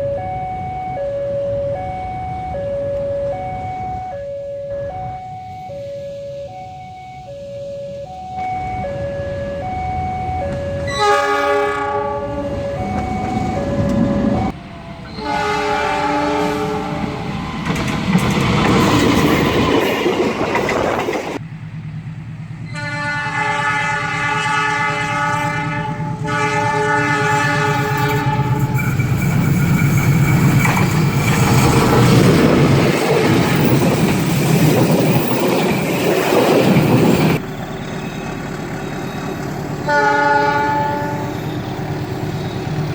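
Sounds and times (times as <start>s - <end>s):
two-tone alarm: 0.0s - 19.9s, 36.1s - 42.9s
train rumbling past: 0.0s - 42.9s
locomotive horn blasts: 0.1s - 17.2s, 22.7s - 28.8s, 39.8s - 41.5s
wheels clacking on rail joints: 12.5s - 21.4s, 27.0s - 42.9s.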